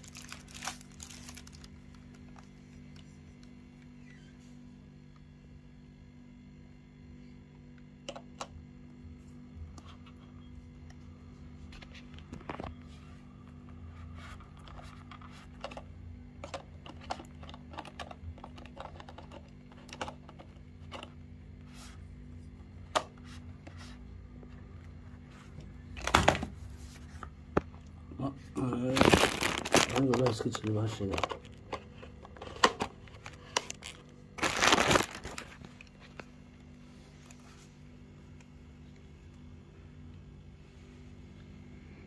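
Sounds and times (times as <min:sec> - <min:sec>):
packaging rustling: 0:00.0 - 0:02.5, 0:28.6 - 0:36.2
steady low hum: 0:00.0 - 0:42.0.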